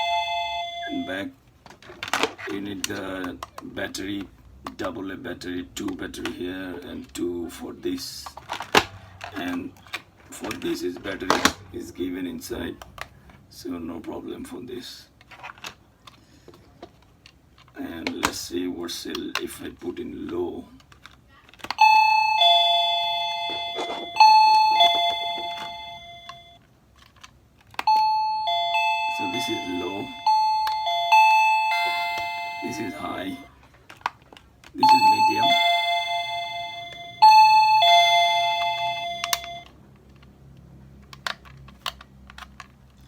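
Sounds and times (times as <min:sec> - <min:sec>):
doorbell two-note chime: 0:00.0 - 0:01.1, 0:21.8 - 0:26.6, 0:27.9 - 0:33.5, 0:34.8 - 0:39.7.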